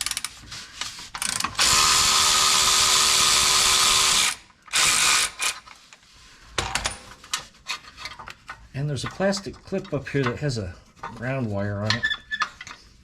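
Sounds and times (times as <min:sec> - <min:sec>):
cordless power tool motor running: 0:01.6 - 0:05.4.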